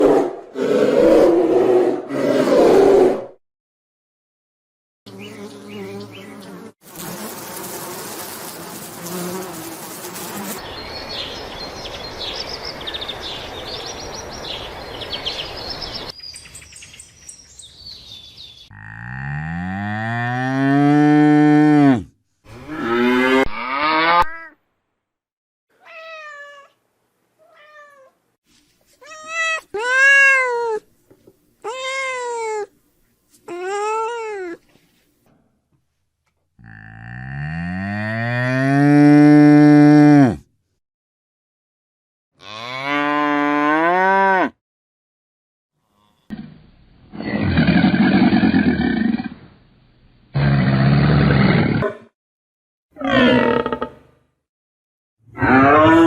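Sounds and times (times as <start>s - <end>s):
cattle mooing: 18.7s - 24.3s, 36.6s - 40.4s, 42.4s - 44.5s, 53.0s - 53.9s, 55.4s - 56.0s
cat meowing: 25.8s - 26.8s, 27.4s - 28.2s, 29.0s - 30.8s, 31.6s - 32.7s, 33.5s - 34.6s.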